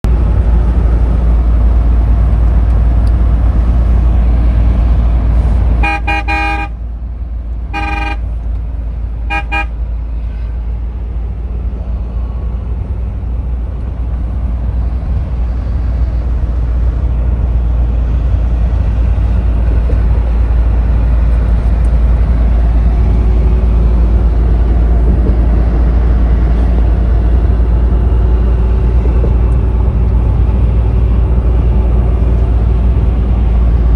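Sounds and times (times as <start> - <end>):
vehicle rumbling on the move: 0.0 - 33.9
vehicle horn tooting: 5.8 - 6.8, 7.7 - 8.3, 9.3 - 10.5.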